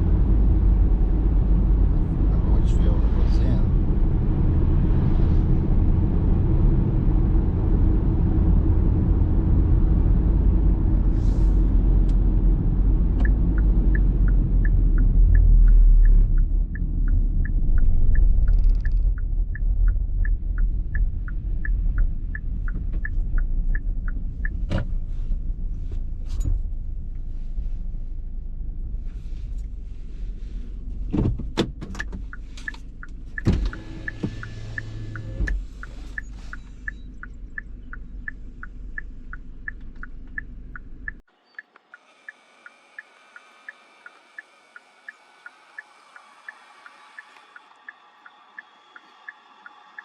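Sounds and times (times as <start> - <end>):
engine and road rumble: 0.0 - 50.0
clicks: 13.2 - 24.6
indicator ticking: 13.2 - 24.7, 32.3 - 50.0.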